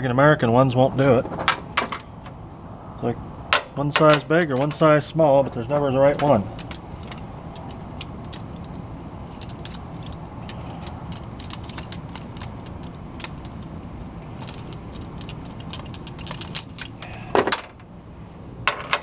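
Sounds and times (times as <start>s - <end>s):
steady low hum: 1.8s - 18.5s
metal sockets clinking: 5.8s - 17.8s.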